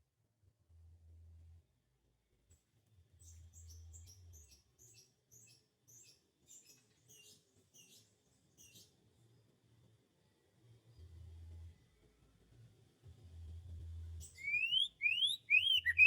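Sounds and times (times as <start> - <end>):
bird chirping: 14.2 - 16.0.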